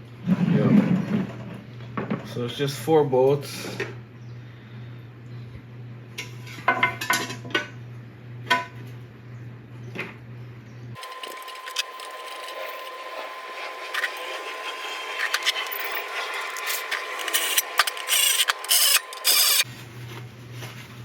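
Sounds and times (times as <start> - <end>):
ratchet clicking: 15.2 - 19.7.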